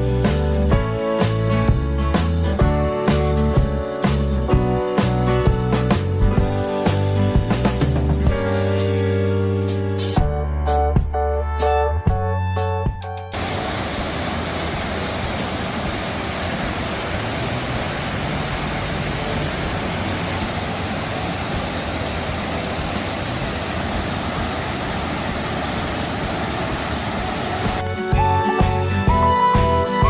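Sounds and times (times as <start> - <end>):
waterfall roaring: 13.4 - 28.1.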